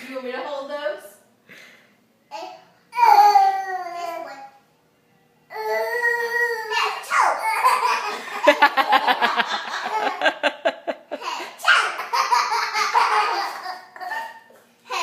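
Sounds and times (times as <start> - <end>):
child laughing: 6.8 - 15.0.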